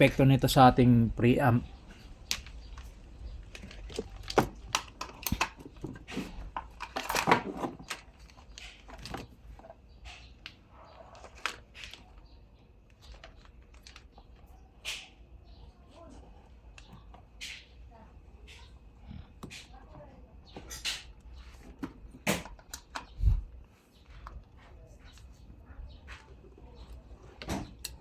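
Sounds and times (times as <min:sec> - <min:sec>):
hands handling power adapter cables: 0:02.0 - 0:15.2, 0:20.7 - 0:23.2.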